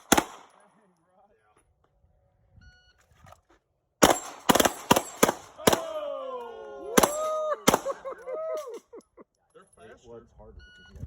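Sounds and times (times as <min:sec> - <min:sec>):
rapid gunfire: 0:00.0 - 0:00.5, 0:04.0 - 0:05.9, 0:07.0 - 0:07.9.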